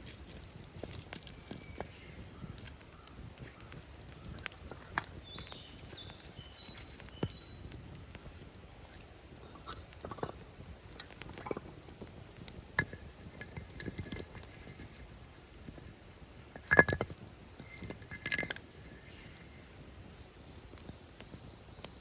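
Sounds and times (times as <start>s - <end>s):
ringing clatter: 16.6s - 18.6s.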